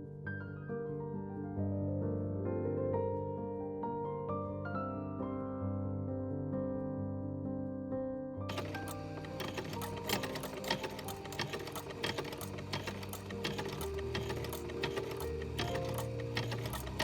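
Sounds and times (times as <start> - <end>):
soft piano music: 0.0 - 17.0
sewing machine clicking: 8.5 - 17.0.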